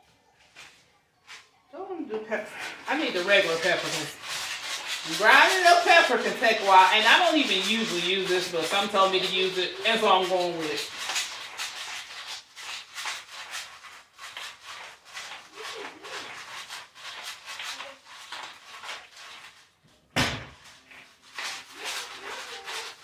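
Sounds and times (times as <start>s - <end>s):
loud thump: 20.1s - 20.6s.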